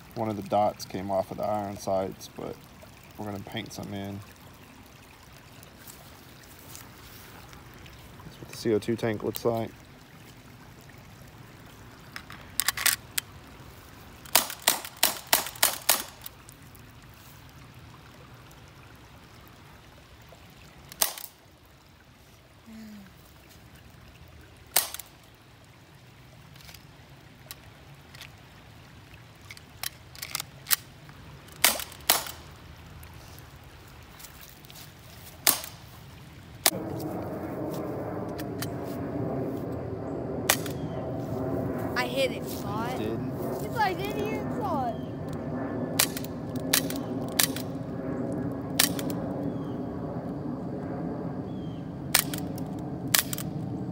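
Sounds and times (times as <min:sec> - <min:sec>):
steady loud noise: 0:36.7 - 0:53.9.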